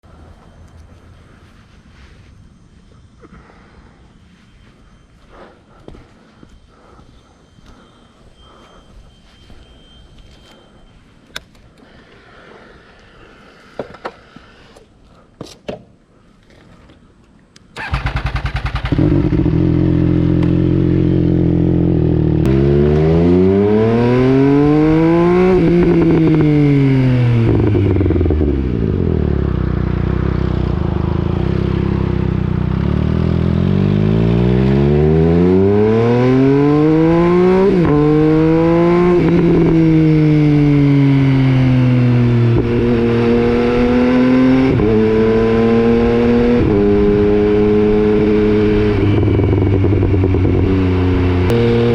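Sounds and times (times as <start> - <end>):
motorcycle engine revving: 17.8 - 51.9.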